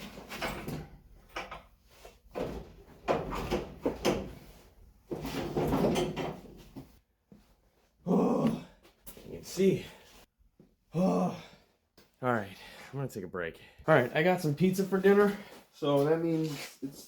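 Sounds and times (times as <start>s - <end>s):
metal parts clunking and rattling: 0.0s - 6.8s.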